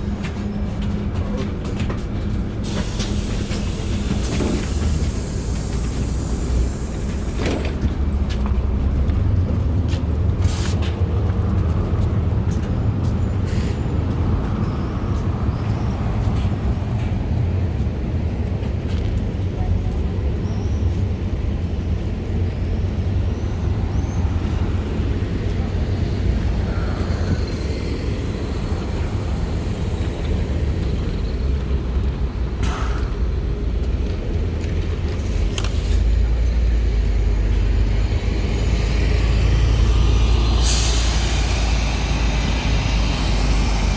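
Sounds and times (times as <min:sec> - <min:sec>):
bus engine rumbling: 0:00.0 - 0:43.9
compressed air hissing: 0:39.0 - 0:43.9.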